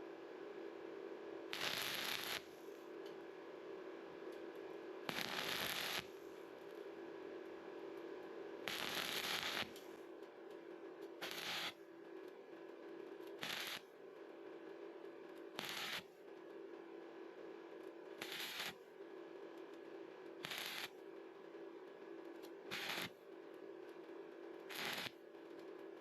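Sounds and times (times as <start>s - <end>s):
steady low hum: 0.0s - 26.0s
welding arc crackling: 1.5s - 2.4s, 5.1s - 6.0s, 8.7s - 9.8s, 11.2s - 11.7s, 13.4s - 13.8s, 15.6s - 16.0s, 18.2s - 18.8s, 20.4s - 20.9s, 22.7s - 23.1s, 24.7s - 25.1s.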